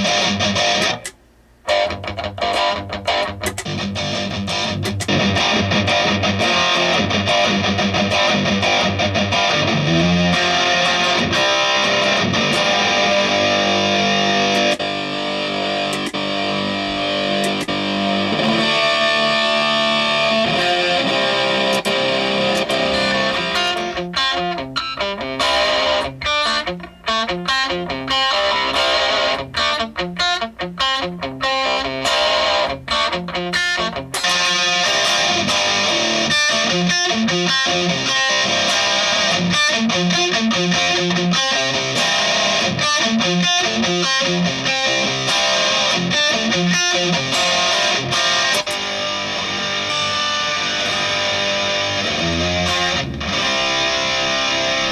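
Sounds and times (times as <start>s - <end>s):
distorted electric guitar: 0.0s - 54.9s.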